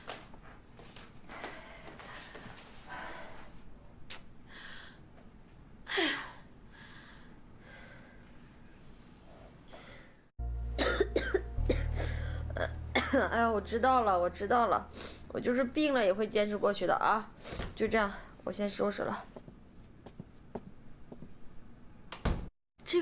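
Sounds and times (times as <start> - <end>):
low hum: 10.4 - 16.2
person sniffing and coughing: 10.8 - 12.3.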